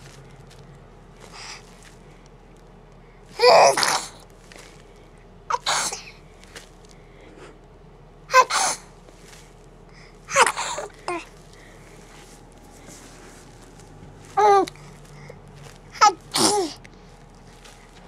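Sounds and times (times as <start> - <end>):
baby fake-sneezing: 3.4 - 4.2, 5.5 - 6.1, 8.3 - 8.9, 10.3 - 11.2, 16.0 - 16.8.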